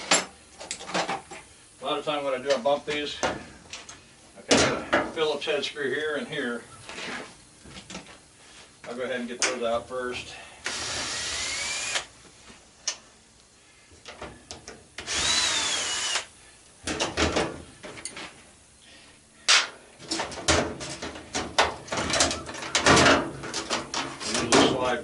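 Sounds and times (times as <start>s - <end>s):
power drill whining: 10.7s - 12.1s, 15.0s - 16.3s.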